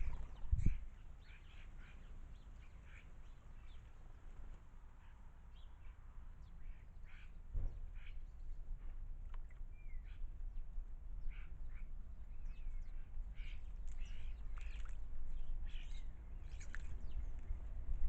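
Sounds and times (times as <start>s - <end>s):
steady low rumble: 0.0s - 1.2s
garden birds chirping: 0.0s - 18.0s.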